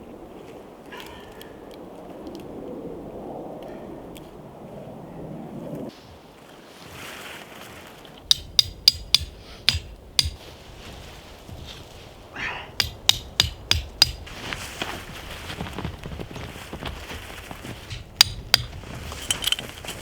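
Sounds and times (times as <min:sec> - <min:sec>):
axe striking wood: 0:08.3 - 0:10.4, 0:12.8 - 0:14.3, 0:17.9 - 0:18.8.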